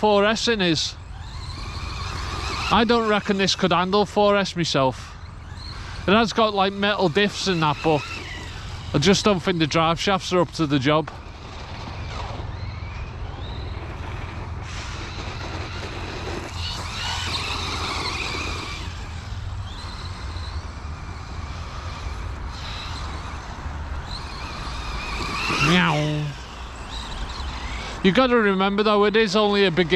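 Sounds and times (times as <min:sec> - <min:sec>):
electric motor whine: 0:00.0 - 0:29.9.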